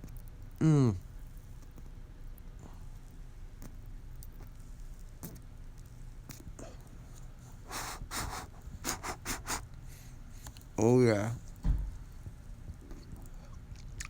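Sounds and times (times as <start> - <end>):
low steady hum: 0.0 - 14.0
person puffing on cigar: 6.3 - 10.6.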